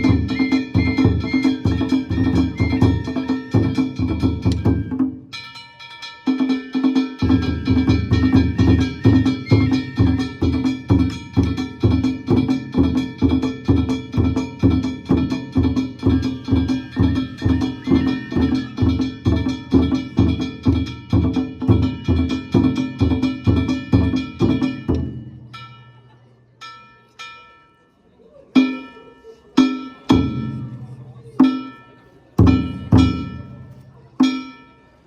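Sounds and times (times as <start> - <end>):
big drum beating: 0.0 - 5.4, 6.9 - 25.6, 30.1 - 31.6, 32.4 - 33.8
gongs ringing: 0.0 - 27.3.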